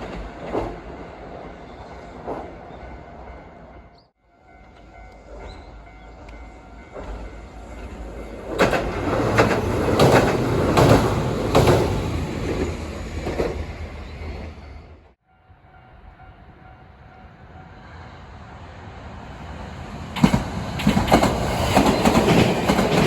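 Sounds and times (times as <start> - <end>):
train wheels clacking over rail joints: 7.8 - 13.6, 20.2 - 23.0.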